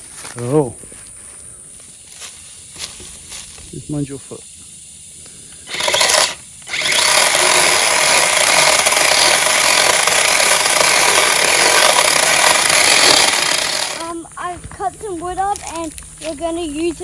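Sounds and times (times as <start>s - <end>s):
electric chainsaw cutting wood: 5.6s - 14.1s.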